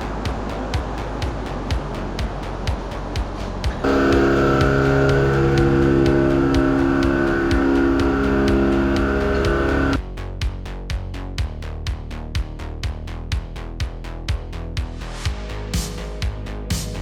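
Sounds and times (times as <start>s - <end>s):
electronic music with beat: 0.0s - 17.0s
steady drone of held tones: 3.8s - 10.0s.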